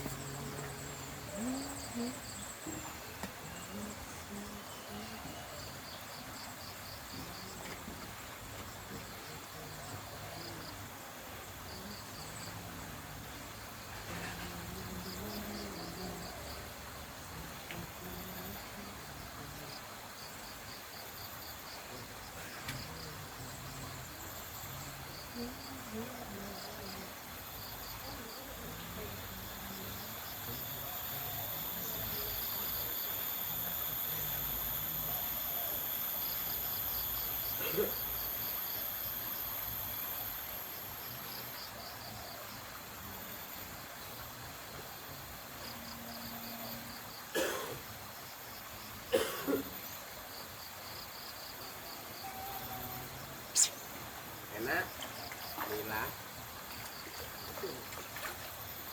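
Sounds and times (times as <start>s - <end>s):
crickets chirping: 0.0s - 58.9s
faint distant voices: 0.0s - 58.9s
high-pitched insect buzz: 22.8s - 44.3s, 49.5s - 57.8s.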